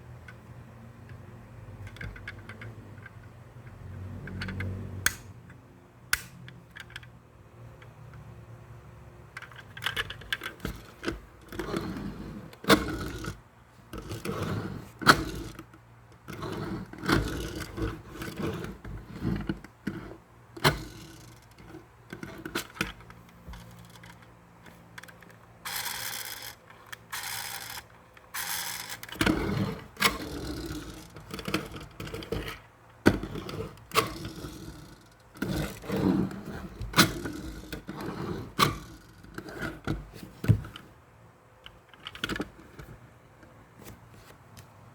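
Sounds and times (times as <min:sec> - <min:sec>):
clicks and scrapes of metal and plastic: 0:09.4 - 0:41.0, 0:41.6 - 0:44.4.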